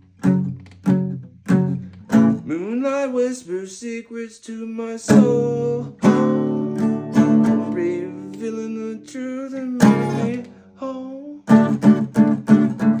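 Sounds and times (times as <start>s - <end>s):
acoustic guitar strumming: 0.0s - 3.3s, 5.0s - 13.0s
person singing: 2.4s - 11.8s.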